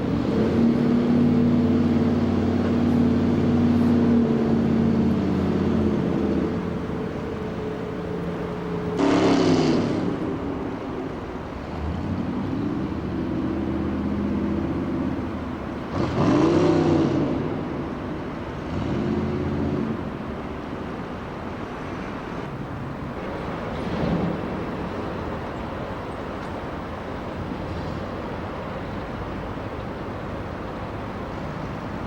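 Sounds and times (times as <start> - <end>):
steady motor drone: 0.0 - 20.9
engines passing by: 0.0 - 32.0.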